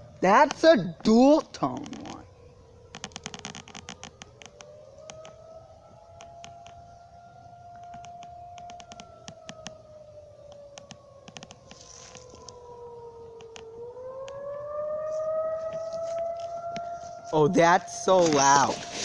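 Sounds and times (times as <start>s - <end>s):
dual-tone warning siren: 0.0s - 19.0s
sharp crackling clicks: 0.4s - 2.3s, 2.9s - 5.4s, 6.1s - 6.9s, 7.7s - 17.4s.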